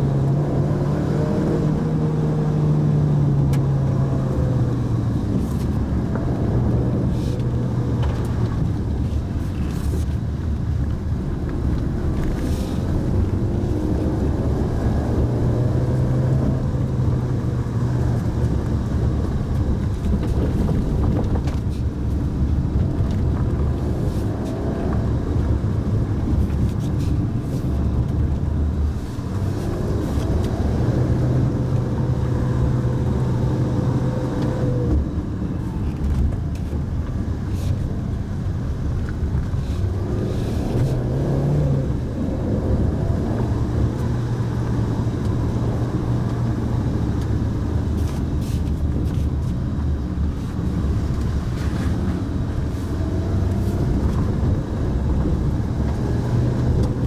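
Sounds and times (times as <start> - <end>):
car engine hum: 0.0 - 57.0
tyre and road noise: 0.0 - 57.0.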